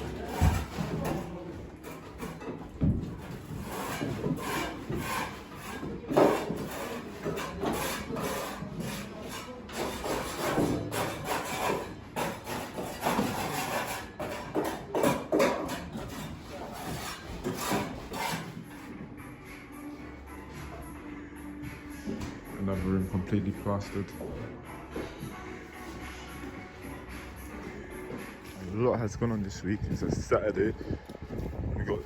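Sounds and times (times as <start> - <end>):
scraping and rubbing strokes: 3.3 - 19.0.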